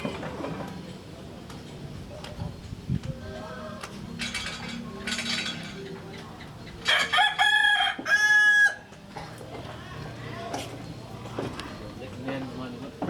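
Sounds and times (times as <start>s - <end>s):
rooster crowing: 6.8s - 8.9s.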